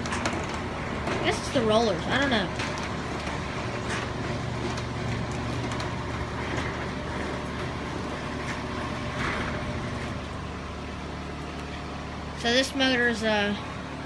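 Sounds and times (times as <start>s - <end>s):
roller creaks: 0.0s - 10.4s
garage door opener running: 0.0s - 14.0s.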